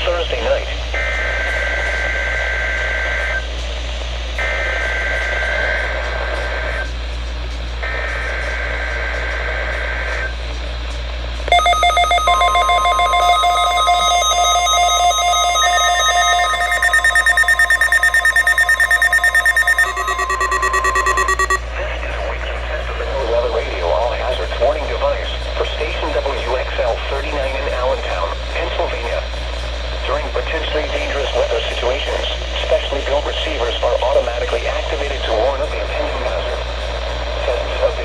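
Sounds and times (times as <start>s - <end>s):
electronic alert tone: 11.5s - 21.6s
raspy two-tone digital warbles: 11.5s - 21.6s.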